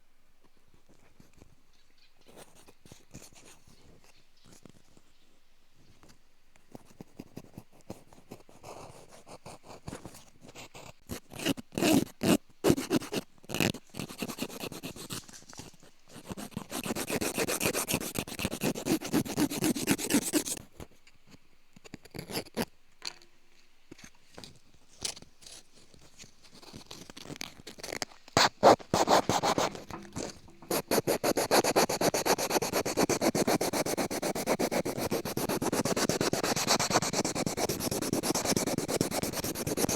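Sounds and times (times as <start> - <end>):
ear pick scraping ear: 26.5 - 39.9.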